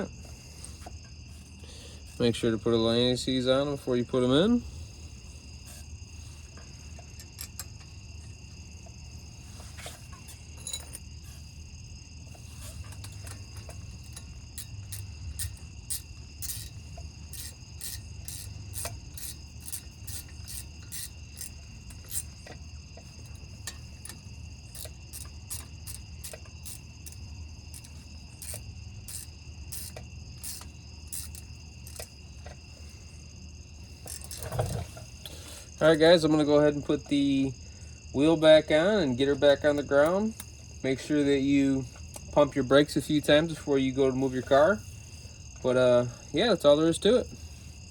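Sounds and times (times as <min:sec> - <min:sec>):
insects trilling: 0:00.0 - 0:47.9
hand tools clicking and tapping: 0:12.7 - 0:32.6.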